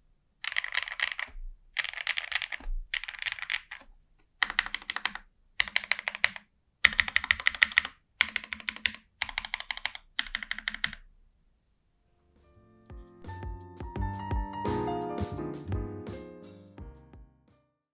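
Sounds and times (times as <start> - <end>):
mechanical keyboard typing: 0.4 - 11.1.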